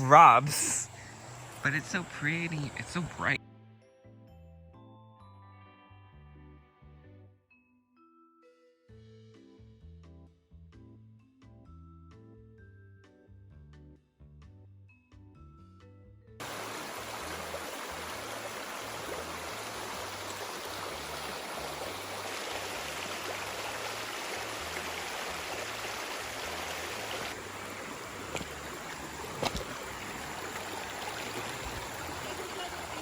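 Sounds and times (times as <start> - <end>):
rushing water: 0.0 - 3.4, 16.4 - 33.0
soft background music: 3.4 - 16.4.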